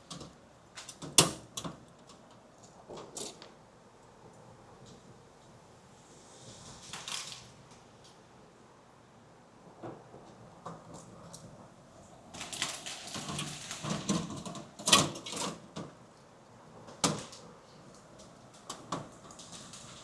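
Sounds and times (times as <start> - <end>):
rustling and small clatter: 9.7 - 20.0.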